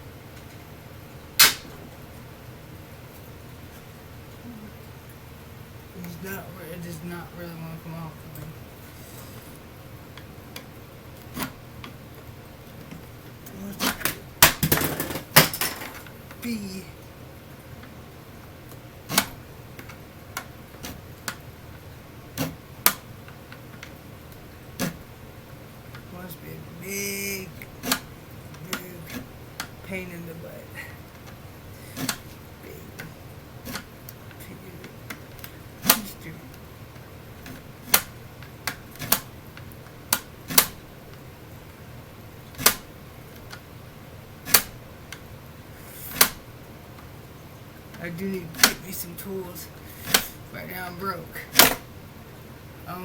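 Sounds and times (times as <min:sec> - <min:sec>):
hard plastic clicking and snapping: 0:18.6 - 0:25.1, 0:27.6 - 0:29.8, 0:31.1 - 0:32.4, 0:33.0 - 0:41.2, 0:42.5 - 0:43.7, 0:44.4 - 0:45.3, 0:46.1 - 0:47.1, 0:51.5 - 0:51.9
sharp clicks on plastic model: 0:18.7 - 0:21.4, 0:37.0 - 0:40.8, 0:42.6 - 0:43.7, 0:44.4 - 0:45.2, 0:46.1 - 0:46.4.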